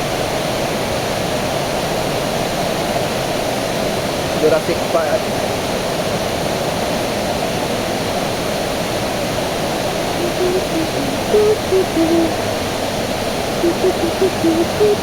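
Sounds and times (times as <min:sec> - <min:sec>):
waterfall rushing: 0:09.8 - 0:15.0.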